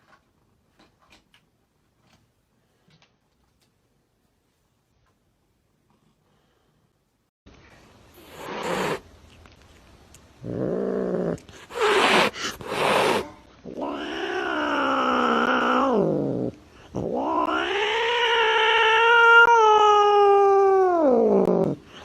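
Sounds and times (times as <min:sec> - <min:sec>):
cat yowling: 0:17.0 - 0:21.7.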